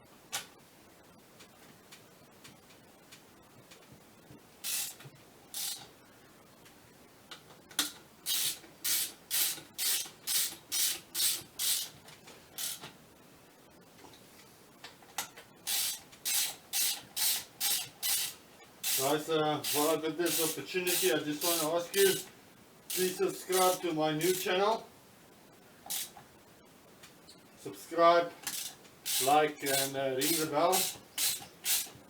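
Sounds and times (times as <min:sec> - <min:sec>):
short hissing strokes: 0:28.5 - 0:31.9.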